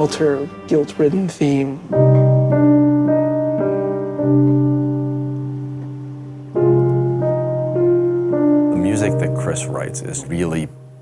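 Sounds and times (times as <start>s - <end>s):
slow solo piano: 1.8s - 11.0s.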